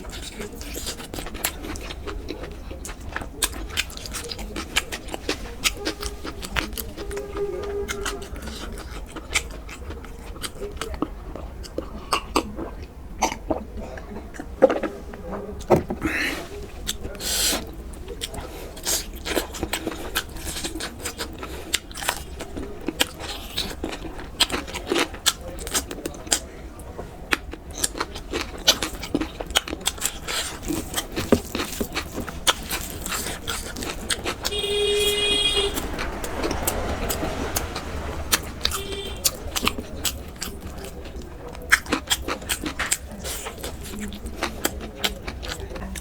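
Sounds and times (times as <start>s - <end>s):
vehicle horn honking: 5.6s - 8.1s, 34.2s - 39.9s
chewing mouth smacks: 27.3s - 34.5s, 35.8s - 46.0s.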